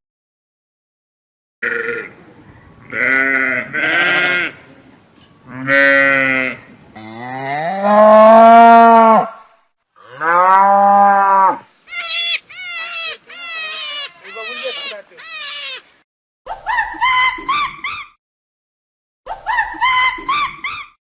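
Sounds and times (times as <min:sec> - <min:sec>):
cattle mooing: 0:05.5 - 0:09.3.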